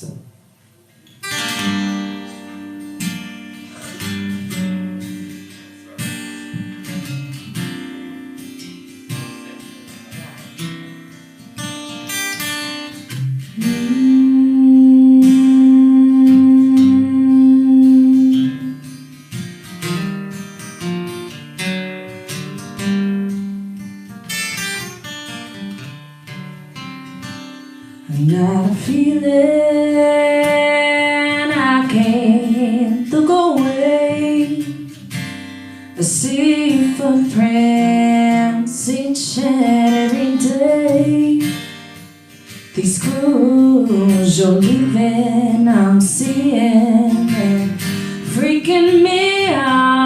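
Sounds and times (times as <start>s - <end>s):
acoustic guitar playing: 0.0s - 50.0s.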